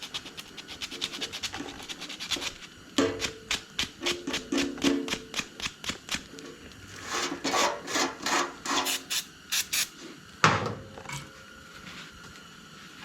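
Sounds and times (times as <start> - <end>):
scraping strokes on metal part: 7.0 - 9.9.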